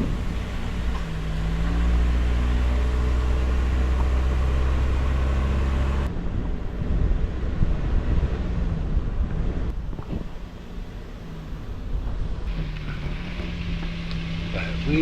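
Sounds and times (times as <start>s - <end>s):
gusty wind on microphone: 0.0s - 5.0s, 6.0s - 12.6s
vehicle engine with road rumble: 0.0s - 15.0s.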